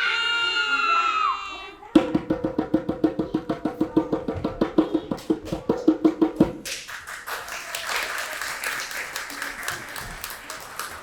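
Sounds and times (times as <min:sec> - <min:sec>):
fast even percussion strikes: 0:02.0 - 0:07.1
applause: 0:06.6 - 0:11.0.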